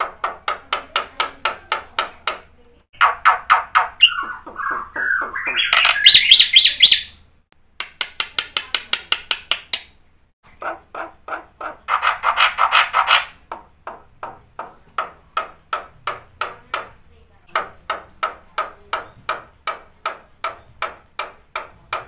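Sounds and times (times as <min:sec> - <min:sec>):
myna whistles and chirps: 0:04.0 - 0:07.2.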